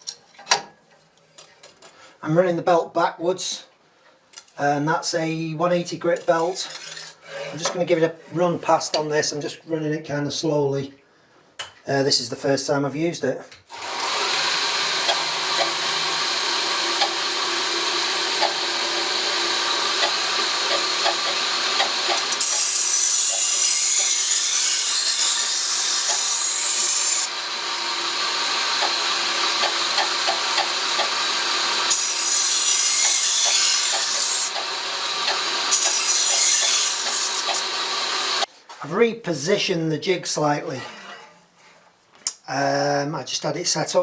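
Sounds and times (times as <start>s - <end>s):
belt grinder running: 13.7s - 38.5s.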